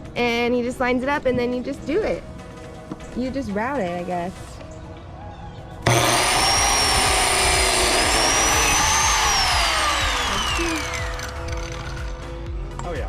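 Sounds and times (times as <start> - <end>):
electric router whining: 5.8 - 12.4.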